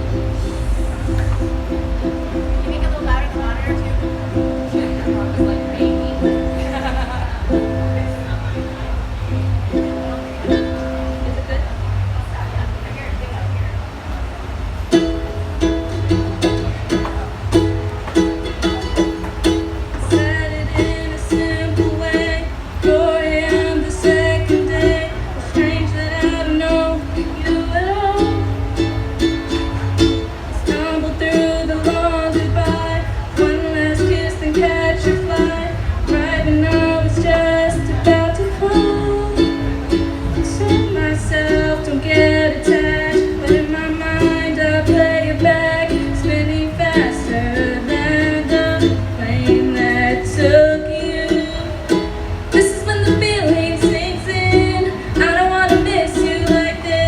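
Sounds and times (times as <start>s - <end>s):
strummed ukulele chords: 0.0s - 57.0s
person singing: 14.9s - 57.0s.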